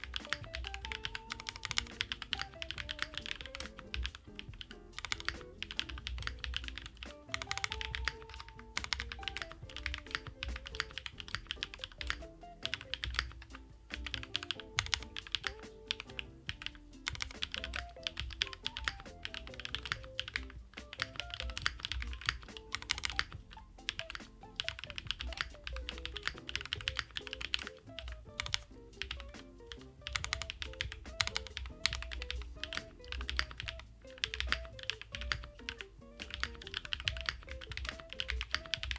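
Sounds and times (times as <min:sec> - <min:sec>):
mechanical keyboard typing: 0:00.0 - 0:38.9
soft background music: 0:00.0 - 0:38.9.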